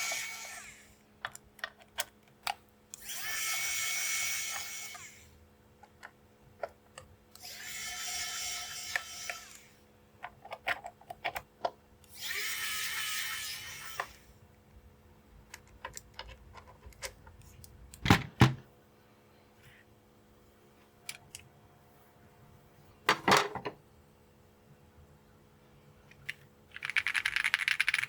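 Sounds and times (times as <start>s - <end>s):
small motorised tool whirring: 0.0s - 1.0s, 2.9s - 5.4s, 7.3s - 9.8s, 12.1s - 14.3s.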